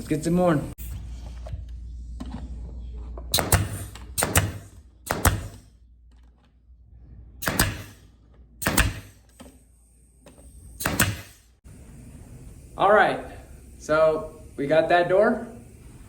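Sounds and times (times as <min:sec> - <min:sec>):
sharp knocks of hammering: 0:03.4 - 0:05.6, 0:07.4 - 0:08.0, 0:08.6 - 0:09.2, 0:10.8 - 0:11.4.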